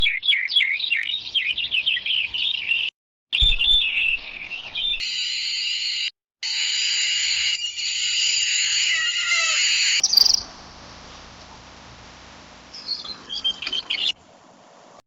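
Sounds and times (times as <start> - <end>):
chorus of rapid chirping calls: 6.4 - 10.5, 12.7 - 14.2
short high bird chirps: 7.6 - 10.5.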